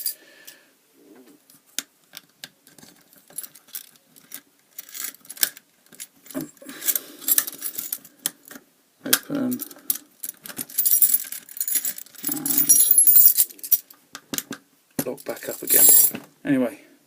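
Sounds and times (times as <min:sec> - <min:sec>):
keys jangling: 0:10.4 - 0:13.8.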